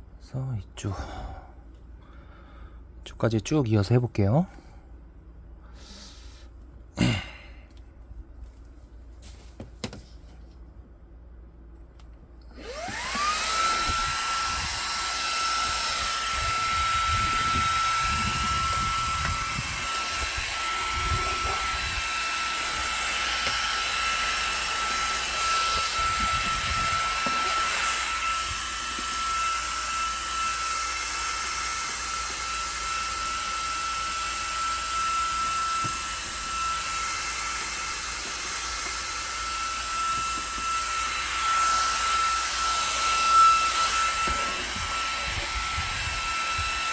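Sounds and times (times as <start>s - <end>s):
vacuum cleaner motor whine: 12.5s - 46.9s.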